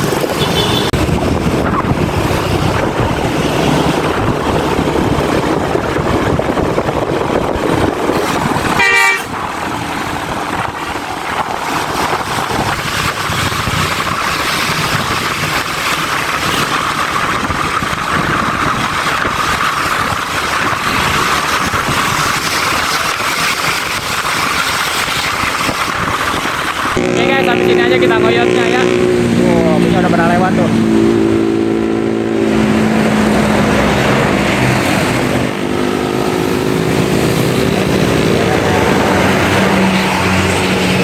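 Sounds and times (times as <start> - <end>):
vehicle road and wind noise: 0.0 - 41.0
short horn toot: 8.8 - 9.4, 27.0 - 29.2.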